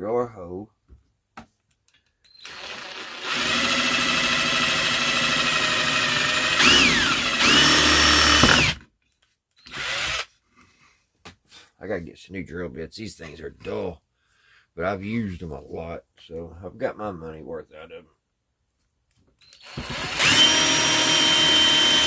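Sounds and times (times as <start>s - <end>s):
electric drill boring into wood: 2.3s - 8.8s, 9.6s - 10.3s, 19.4s - 22.0s.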